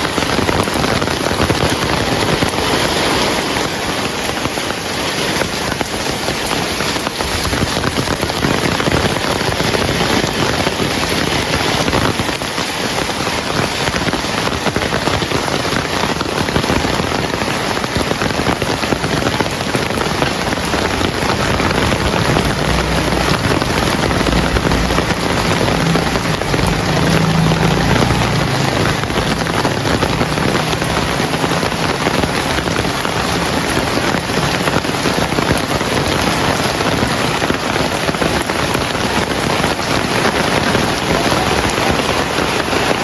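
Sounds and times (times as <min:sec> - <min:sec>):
heavy rain falling: 0:00.0 - 0:43.0
low rumble: 0:20.6 - 0:33.8.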